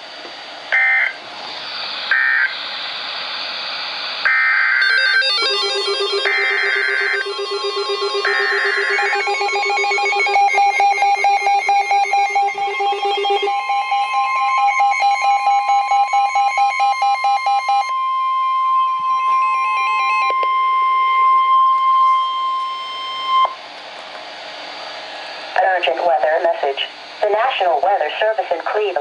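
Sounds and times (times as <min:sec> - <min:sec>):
steady alarm tone: 0:00.0 - 0:28.5
radio hiss: 0:00.2 - 0:04.3, 0:24.6 - 0:29.0
rapid electronic alarm beeping: 0:00.7 - 0:23.7.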